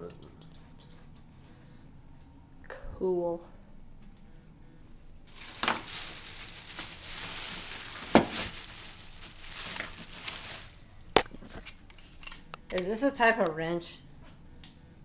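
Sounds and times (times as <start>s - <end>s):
plastic bag rustling: 5.3s - 12.3s
tools clicking together: 11.6s - 12.9s.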